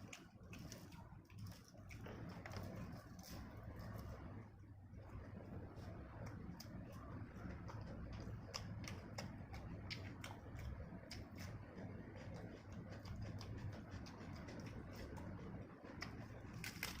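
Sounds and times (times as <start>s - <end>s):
low steady hum: 0.0s - 17.0s
person chewing and lip-smacking: 6.2s - 16.9s.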